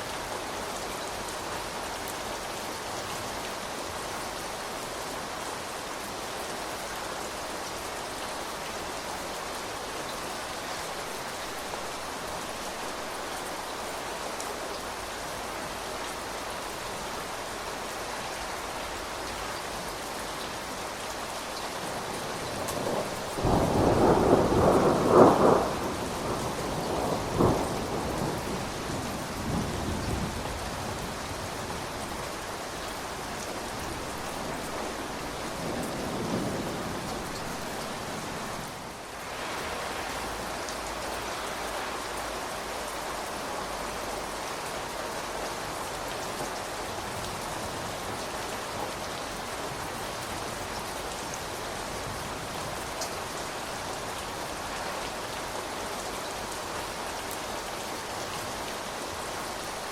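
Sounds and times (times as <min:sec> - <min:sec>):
steady rain falling: 0:00.0 - 0:59.9
thunder clap and rumble: 0:22.6 - 0:31.0.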